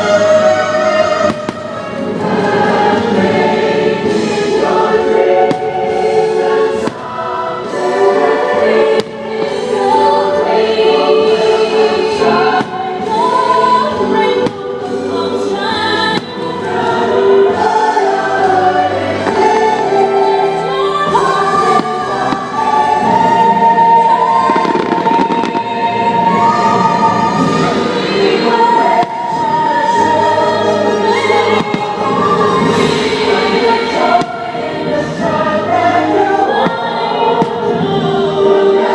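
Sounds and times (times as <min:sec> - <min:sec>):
choir singing held notes: 0:00.0 - 0:38.9
fireworks popping and crackling: 0:06.8 - 0:07.1, 0:24.4 - 0:25.7, 0:31.5 - 0:32.2.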